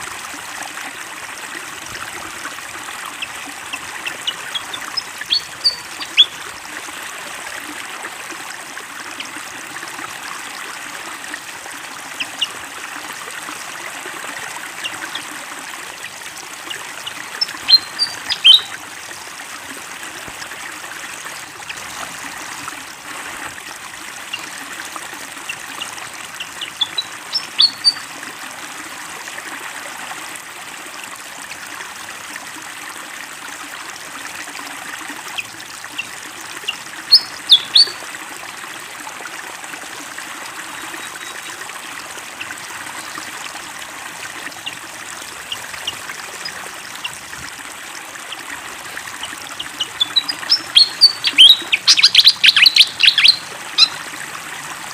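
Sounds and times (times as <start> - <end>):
water trickling: 0.0 - 54.9
bird chirping: 4.0 - 6.3, 17.0 - 18.7, 26.4 - 28.0, 36.7 - 38.0, 49.8 - 54.0.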